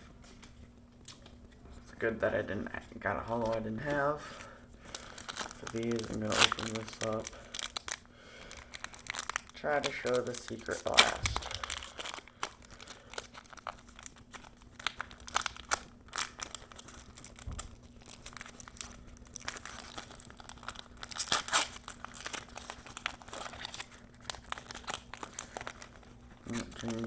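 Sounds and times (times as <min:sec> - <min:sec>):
faint steady hum: 0:00.0 - 0:27.0
foil wrapper crinkling: 0:03.0 - 0:27.0
trading cards rustling: 0:03.2 - 0:04.1, 0:04.8 - 0:27.0.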